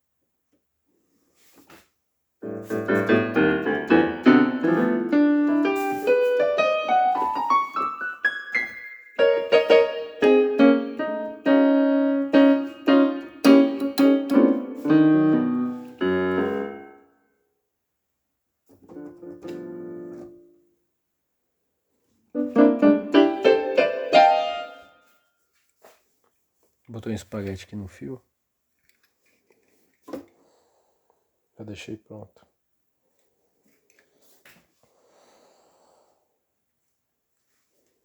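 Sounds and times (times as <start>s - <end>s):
electronic keyboard piano playing: 2.4s - 17.0s, 19.0s - 20.6s, 22.4s - 24.9s.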